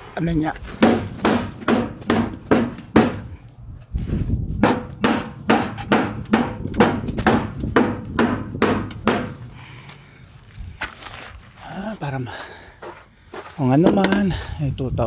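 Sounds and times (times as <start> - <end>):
sharp knocks: 0.8 - 3.4, 4.6 - 9.4
steady low rumble: 0.9 - 10.8.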